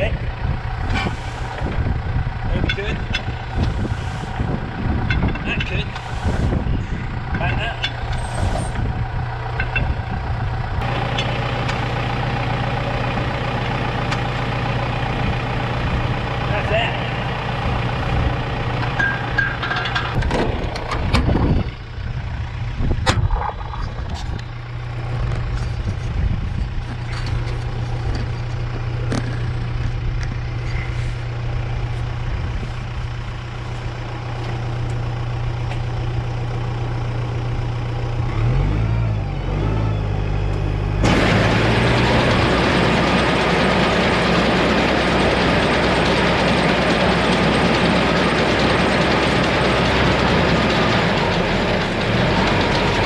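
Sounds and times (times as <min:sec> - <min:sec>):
tractor engine idling: 0:00.0 - 0:53.0
metal clanks and knocks: 0:05.0 - 0:06.1, 0:07.3 - 0:08.8, 0:09.5 - 0:10.0, 0:18.8 - 0:21.5
hay baler clattering: 0:41.0 - 0:53.0.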